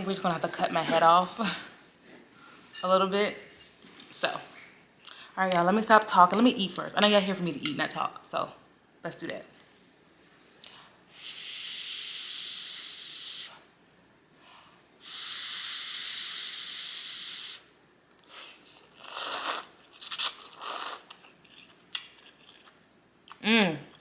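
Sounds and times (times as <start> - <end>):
person blowing on hot noodles: 11.1 - 13.6, 15.0 - 21.1
slurping and chewing: 18.4 - 24.0.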